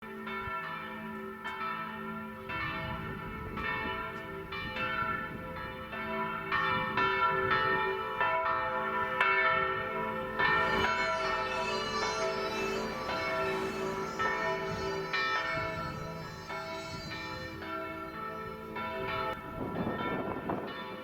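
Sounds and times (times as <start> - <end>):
church bells ringing: 0.0 - 21.0.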